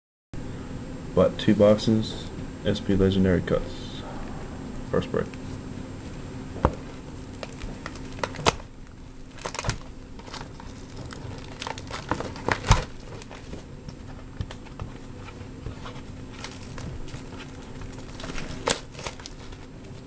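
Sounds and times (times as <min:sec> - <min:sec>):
plastic shrink wrap crinkling: 0:06.8 - 0:20.0.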